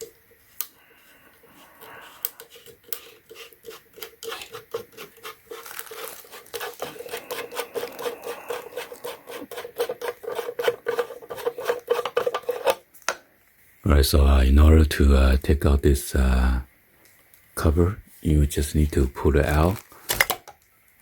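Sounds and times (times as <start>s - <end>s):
faint steady hum: 0.0s - 21.0s
plastic pump clicking and scraping: 2.1s - 13.2s.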